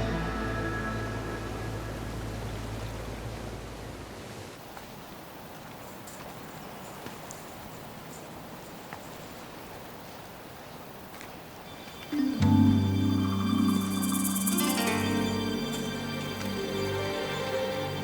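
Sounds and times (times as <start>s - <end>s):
low music drone: 0.0s - 3.6s, 11.9s - 18.0s
ocean surf hiss: 11.6s - 18.0s.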